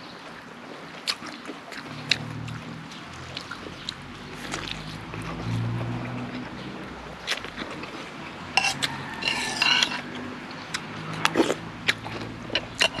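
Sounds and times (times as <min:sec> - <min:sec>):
cutlery clicking and scraping on dish: 0:08.6 - 0:10.2, 0:12.4 - 0:13.0.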